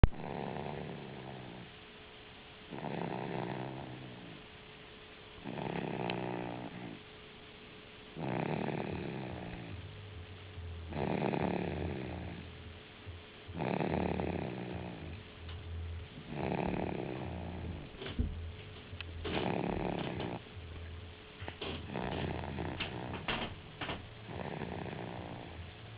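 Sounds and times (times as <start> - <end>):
person snoring: 0.1 - 1.7, 2.7 - 4.4, 5.4 - 7.0, 8.2 - 9.8, 10.8 - 12.7, 13.5 - 15.3, 16.2 - 17.9, 19.2 - 20.4, 21.7 - 23.2, 24.3 - 25.7.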